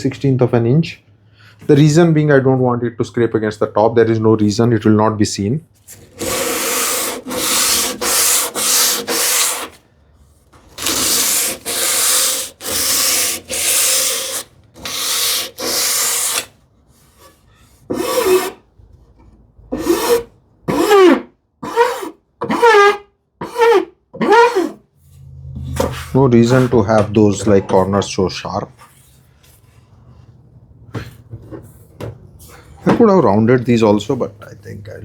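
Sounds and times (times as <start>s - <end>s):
abrasive tool rubbing wood: 6.0s - 9.8s, 10.8s - 16.5s.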